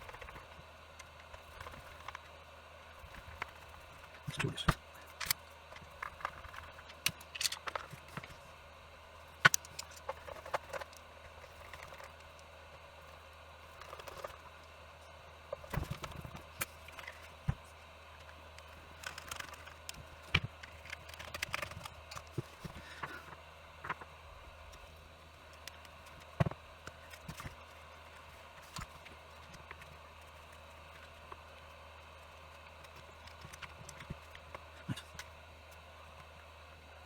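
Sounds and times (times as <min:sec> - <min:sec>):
plastic parts clicking and tapping: 0:04.7 - 0:08.4, 0:09.4 - 0:12.5, 0:18.6 - 0:23.2, 0:32.8 - 0:35.3.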